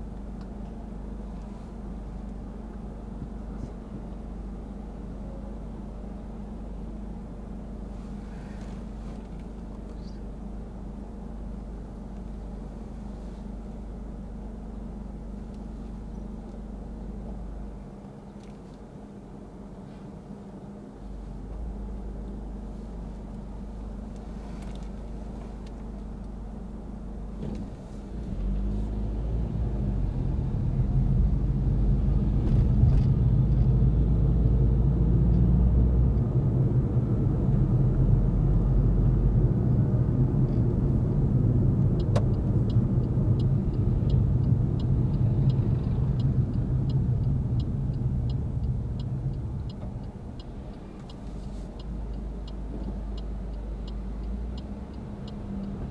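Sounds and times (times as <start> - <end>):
car engine and road noise: 0.0 - 55.9
turn signal ticking: 39.2 - 55.9.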